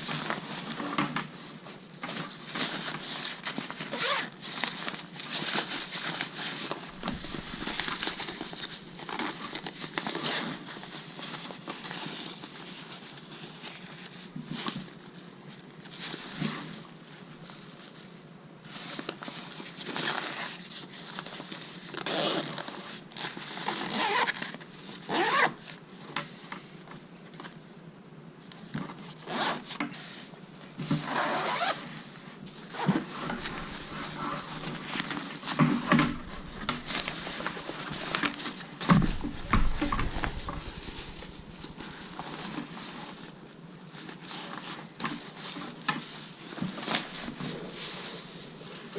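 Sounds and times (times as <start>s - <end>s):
bag zippers zipping: 22.1s - 22.5s, 25.1s - 25.5s, 31.0s - 31.8s, 32.7s - 35.0s.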